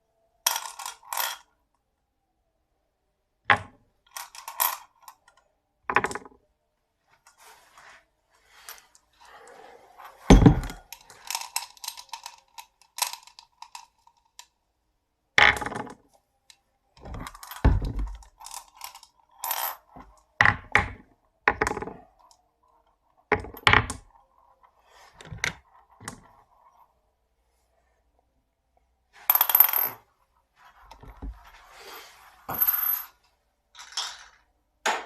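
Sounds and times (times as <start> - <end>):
marbles clacking on wooden track: 10.3 - 14.5, 15.4 - 16.0, 20.4 - 22.0.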